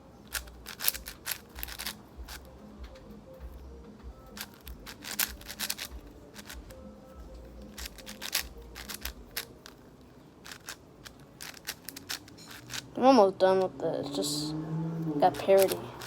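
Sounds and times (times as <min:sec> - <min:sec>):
puzzle cube plastic clicks: 0:00.2 - 0:03.1, 0:04.3 - 0:13.0, 0:15.0 - 0:16.0.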